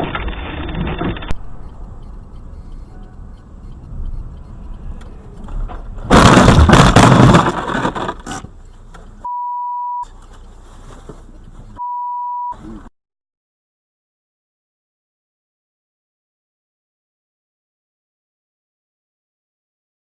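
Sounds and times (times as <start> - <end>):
car rumbling on road: 1.2 - 9.3
high censor beeps: 1.4 - 5.4, 9.2 - 10.1, 11.8 - 12.6
loud car collision crash: 5.7 - 8.2.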